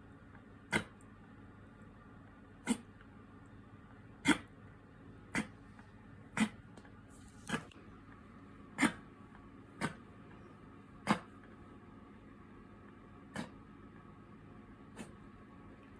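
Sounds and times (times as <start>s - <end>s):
dog reverse sneezing snorts: 0.7s - 0.9s, 2.6s - 2.9s, 4.2s - 4.5s, 5.3s - 5.6s, 6.3s - 6.6s, 7.3s - 7.7s, 8.8s - 9.0s, 9.8s - 10.0s, 11.0s - 11.3s, 13.3s - 13.6s, 14.9s - 15.2s.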